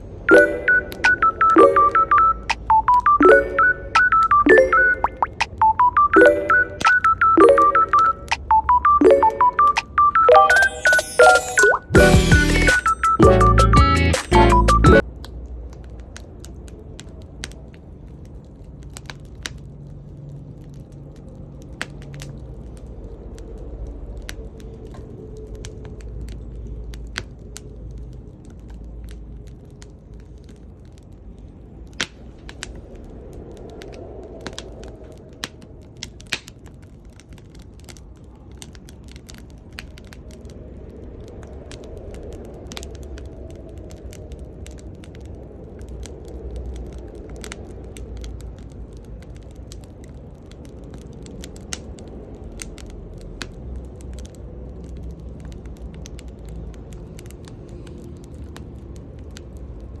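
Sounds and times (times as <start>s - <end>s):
wood fire crackling and popping: 0.0s - 60.0s.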